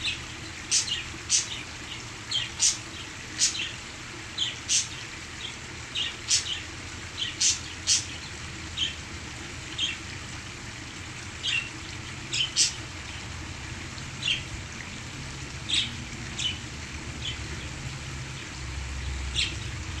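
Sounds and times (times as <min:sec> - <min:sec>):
parakeets chirping: 0:00.0 - 0:03.8, 0:04.4 - 0:09.0, 0:11.4 - 0:11.7, 0:12.3 - 0:13.2, 0:14.2 - 0:14.6, 0:15.6 - 0:17.9, 0:19.0 - 0:20.0.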